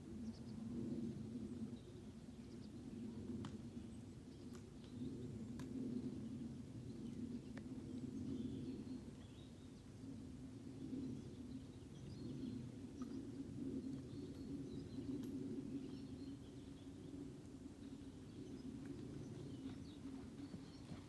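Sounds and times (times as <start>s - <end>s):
outdoor background noise: 0.0s - 21.0s.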